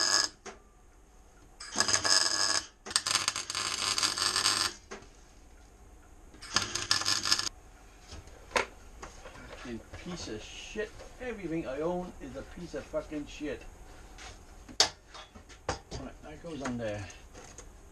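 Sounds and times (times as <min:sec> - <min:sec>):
arc welder crackling and hissing: 0:00.0 - 0:00.4, 0:01.6 - 0:05.2, 0:06.4 - 0:07.5.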